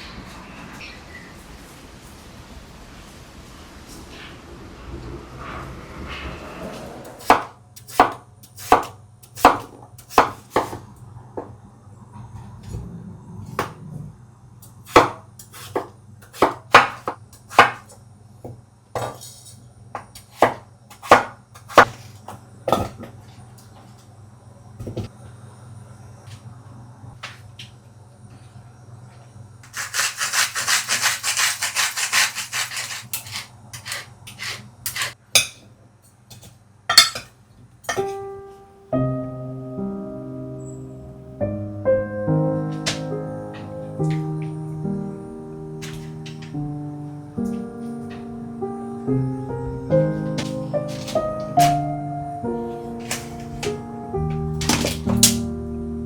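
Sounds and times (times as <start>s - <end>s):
knife chopping on wooden board: 7.3s - 10.8s, 14.9s - 18.0s, 20.3s - 22.1s.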